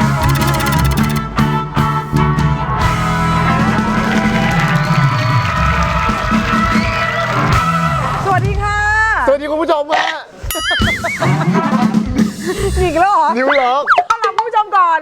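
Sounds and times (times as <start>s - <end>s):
rock band music: 0.0s - 8.7s.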